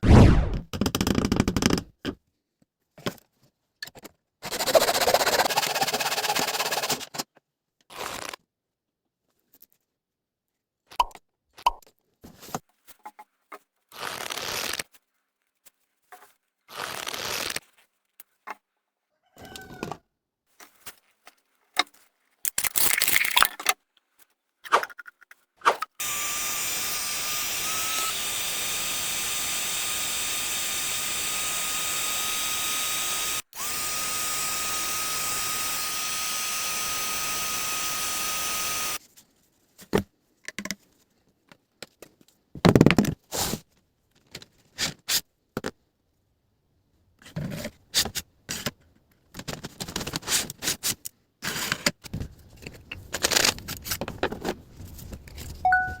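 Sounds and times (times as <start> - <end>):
small power tool whining: 26.0 - 39.0.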